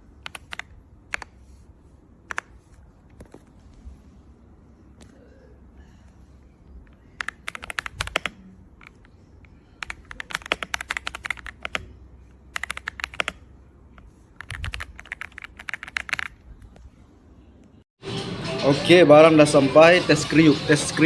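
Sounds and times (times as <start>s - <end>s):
mechanical keyboard key clicks: 0.2s - 1.3s, 7.2s - 9.0s, 9.8s - 11.9s, 12.5s - 13.4s.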